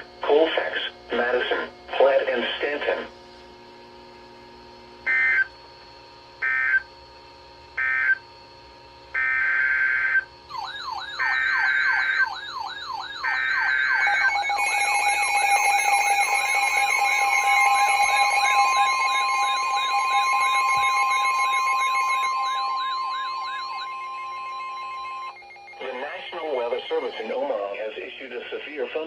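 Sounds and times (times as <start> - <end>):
fast repeating siren wail: 5.1 - 5.5, 6.4 - 6.8, 7.8 - 8.2, 9.1 - 27.3
screechy digital data bursts: 10.5 - 28.4
steady attention tone: 10.5 - 29.0.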